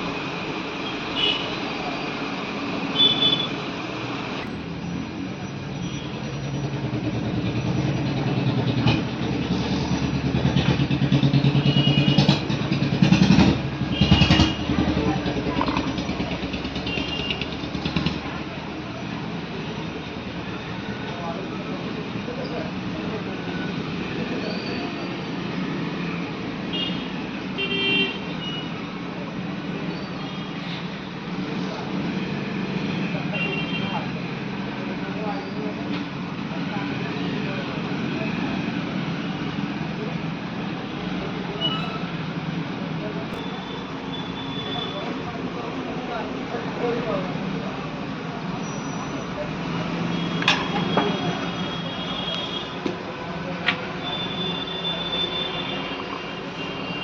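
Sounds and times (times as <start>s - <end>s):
road traffic: 0.0s - 57.0s
motorcycle engine running: 10.5s - 18.4s
short high horn toots: 41.6s - 42.3s.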